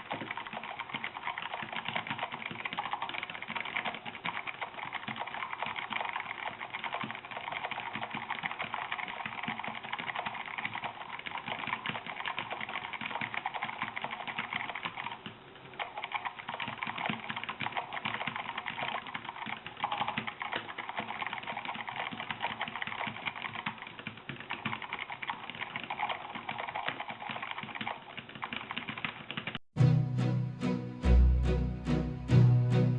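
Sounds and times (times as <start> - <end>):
mechanical keyboard typing: 0.0 - 29.6
music: 29.8 - 32.9.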